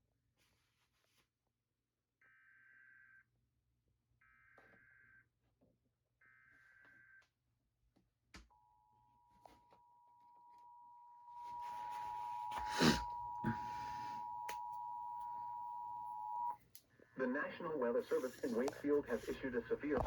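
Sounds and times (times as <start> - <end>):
two-tone attention signal: 9.3 - 16.6
buzzy digital data tone: 9.4 - 16.6.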